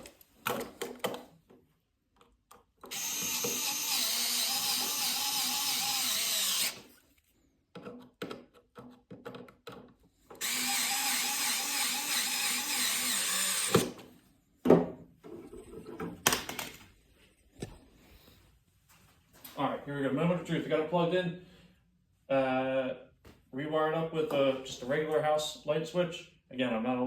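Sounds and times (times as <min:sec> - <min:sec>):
power drill whining: 0:02.8 - 0:07.0, 0:10.4 - 0:14.0.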